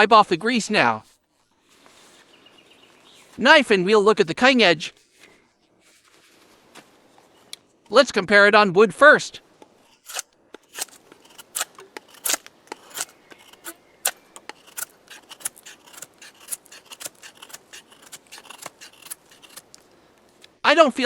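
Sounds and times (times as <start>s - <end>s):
knife blade carving wood: 9.6s - 19.9s.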